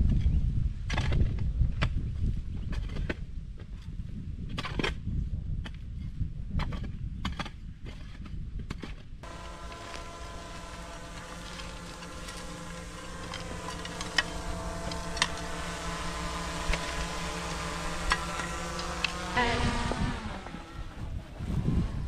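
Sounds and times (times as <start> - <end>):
motor running: 9.2 - 22.0.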